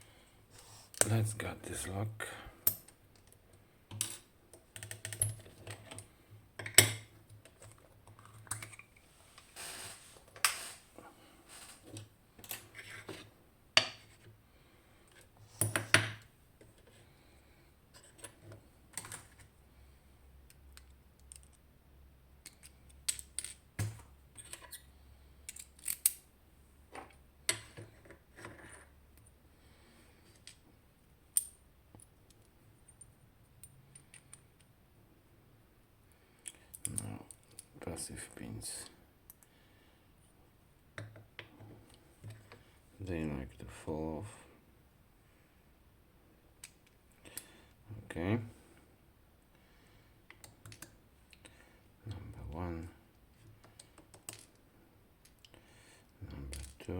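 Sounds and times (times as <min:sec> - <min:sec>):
metal lock parts clicking: 0:25.5 - 0:26.3.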